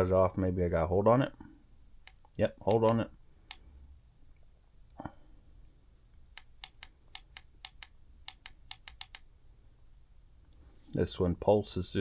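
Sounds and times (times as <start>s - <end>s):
power button clicking: 2.0s - 3.6s, 6.4s - 9.2s.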